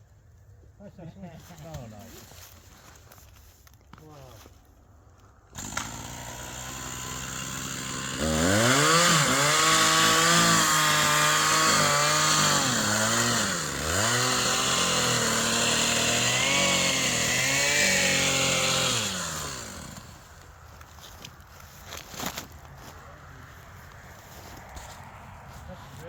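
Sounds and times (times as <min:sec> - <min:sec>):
chainsaw running at high revs: 0:05.5 - 0:20.2.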